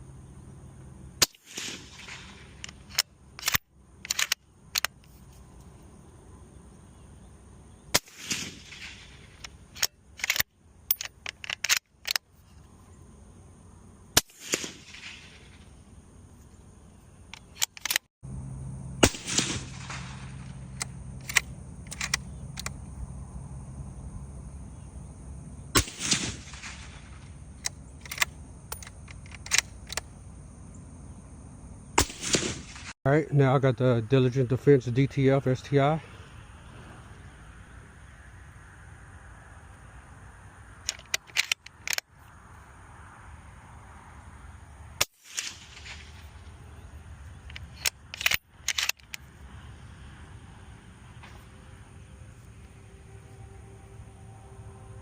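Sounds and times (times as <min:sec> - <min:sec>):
suppressed rifle shots: 0:01.2 - 0:04.4, 0:07.9 - 0:10.4, 0:14.2 - 0:15.6, 0:19.0 - 0:22.7, 0:25.7 - 0:27.2, 0:32.0 - 0:32.9, 0:45.1 - 0:46.4
small clicks: 0:02.0 - 0:05.7, 0:08.7 - 0:12.7, 0:17.3 - 0:18.1, 0:19.8 - 0:22.8, 0:27.6 - 0:30.1, 0:40.8 - 0:42.4, 0:47.4 - 0:49.3.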